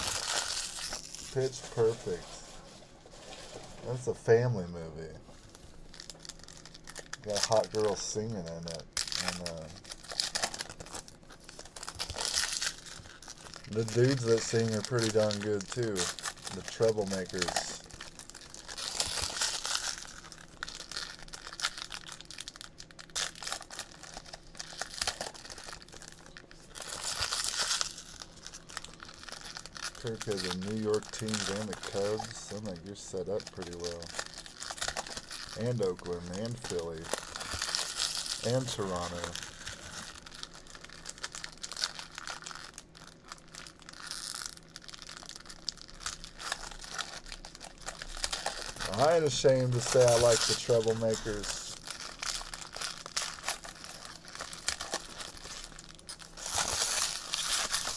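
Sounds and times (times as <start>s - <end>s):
card pack wrappers crinkling and tearing: 0.0s - 57.9s.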